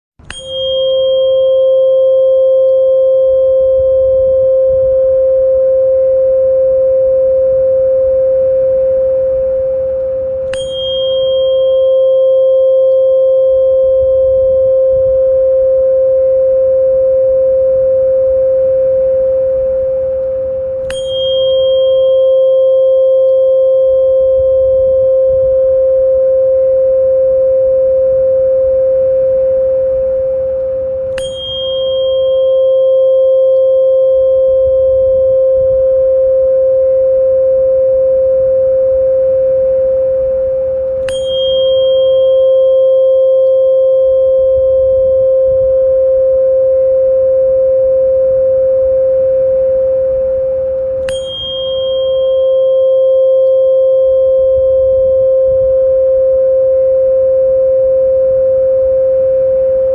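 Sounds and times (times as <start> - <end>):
bright ping strike: 0.2 - 4.2, 9.3 - 15.0, 18.6 - 25.1, 29.0 - 35.2, 39.2 - 45.6, 50.1 - 55.3
pure ringing tone: 0.2 - 59.9.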